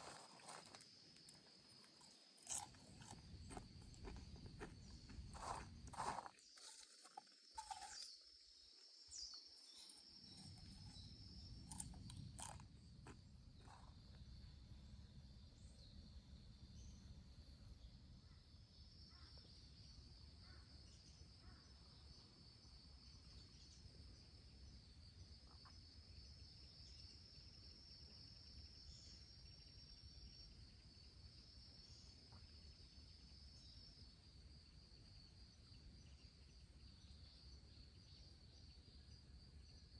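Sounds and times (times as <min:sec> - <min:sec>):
insects trilling: 0:00.0 - 0:14.6.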